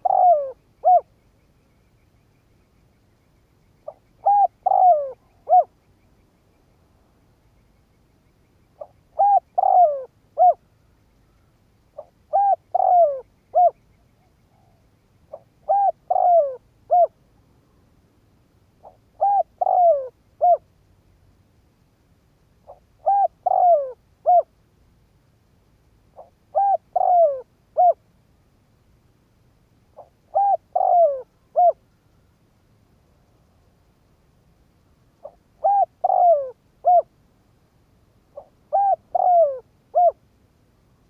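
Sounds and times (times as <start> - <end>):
dove cooing: 0.0 - 1.1, 3.8 - 5.8, 8.8 - 10.7, 12.0 - 13.8, 14.5 - 17.2, 18.8 - 20.6, 22.6 - 24.5, 26.2 - 28.0, 30.0 - 31.8, 35.2 - 37.1, 38.3 - 40.2.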